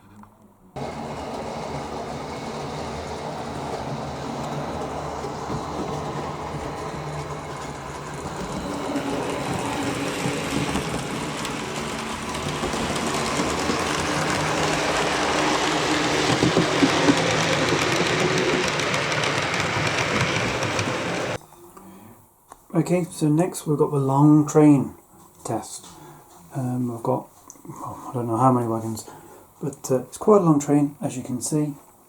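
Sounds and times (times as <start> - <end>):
model train motor hum: 0.8 - 21.4
wheel and track clatter: 0.8 - 21.4.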